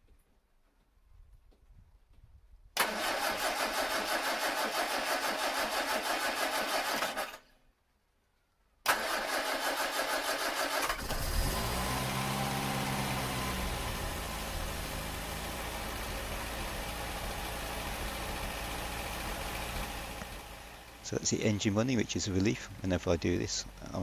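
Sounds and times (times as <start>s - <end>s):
engine cranking on starter: 2.8s - 7.5s, 8.8s - 24.0s
car engine running: 11.0s - 24.0s.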